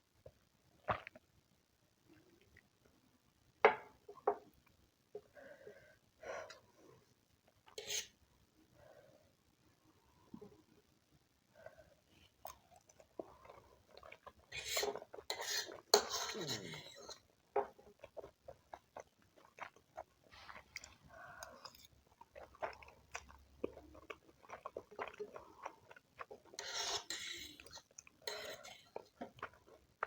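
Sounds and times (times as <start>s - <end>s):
utensil scraping against bowl: 7.8s - 8.1s, 14.5s - 17.2s, 26.6s - 29.0s
chewing: 12.4s - 30.0s.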